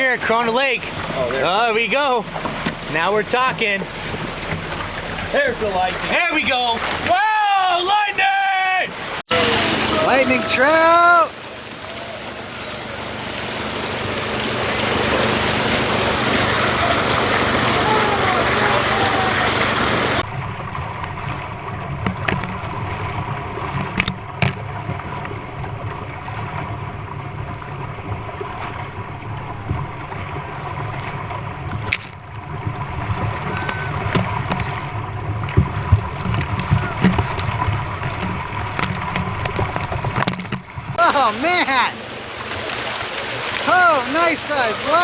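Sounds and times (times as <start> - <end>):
water rushing from pipe: 0.0 - 45.0.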